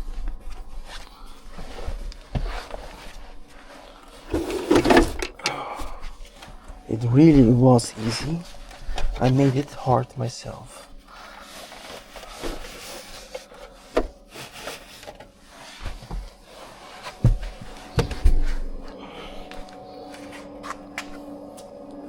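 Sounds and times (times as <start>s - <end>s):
plastic trim panels rubbing: 4.3s - 5.4s.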